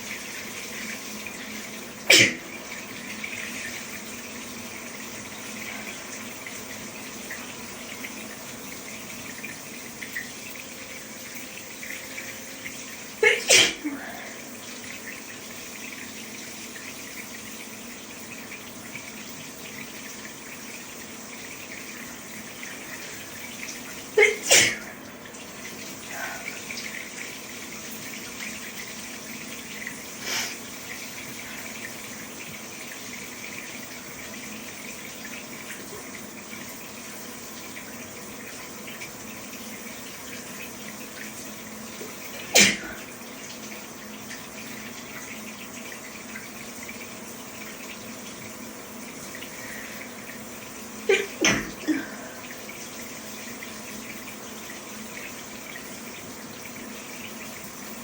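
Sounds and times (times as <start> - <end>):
shower water running: 0.0 - 58.0
person sneezing: 2.1 - 2.4, 13.2 - 14.4, 24.2 - 25.0, 42.5 - 43.0, 51.1 - 52.3.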